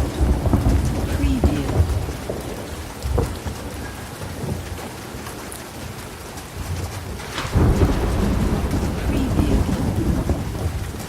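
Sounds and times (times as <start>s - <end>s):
sharp thunderclap: 0.0s - 3.8s, 7.1s - 11.0s
low rolling thunder: 0.0s - 11.0s
steady rain: 0.0s - 11.0s.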